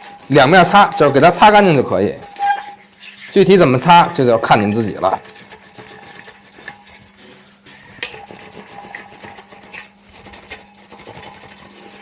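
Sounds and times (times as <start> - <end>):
cloth scraping brake rotor: 0.0 - 3.5, 4.1 - 12.0.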